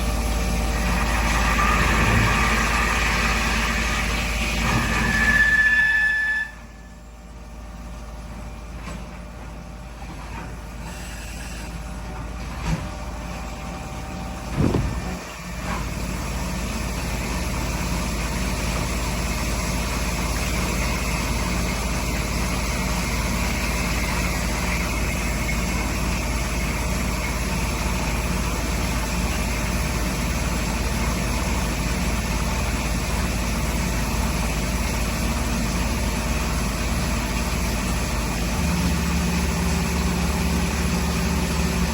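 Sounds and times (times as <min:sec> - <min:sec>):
machining center hum: 0:13.3 - 0:15.6
brief knocks: 0:14.5 - 0:15.3.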